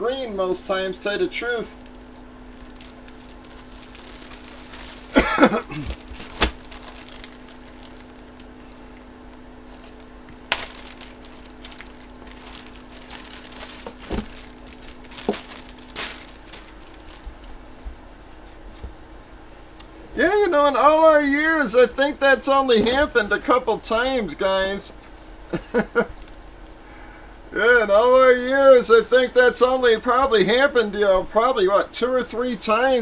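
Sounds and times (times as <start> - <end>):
steady low hum: 0.0 - 33.0
packaging crinkling and clicking: 1.8 - 17.6, 26.0 - 26.8.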